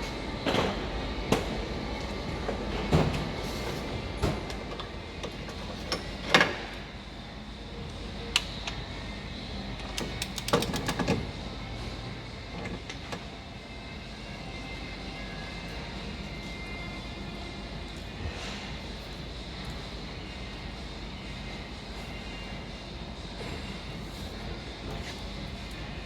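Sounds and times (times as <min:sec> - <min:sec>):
steady low hum: 0:00.0 - 0:26.0
tools and parts clicking: 0:09.8 - 0:11.2.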